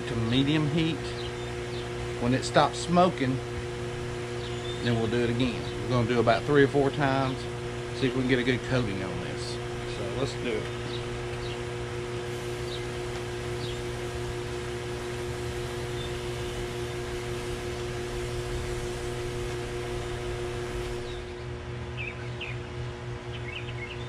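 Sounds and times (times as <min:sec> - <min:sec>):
fan machine humming: 0:00.0 - 0:24.0
bird chirps: 0:04.4 - 0:05.8, 0:12.6 - 0:12.9, 0:21.0 - 0:22.7, 0:23.3 - 0:24.0.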